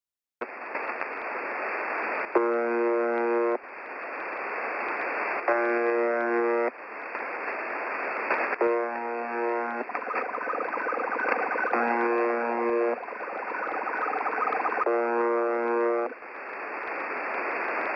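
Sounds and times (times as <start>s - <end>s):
shortwave radio static: 0.4s - 17.9s
radio buzz tone: 2.3s - 3.6s, 5.4s - 6.8s, 8.5s - 16.2s.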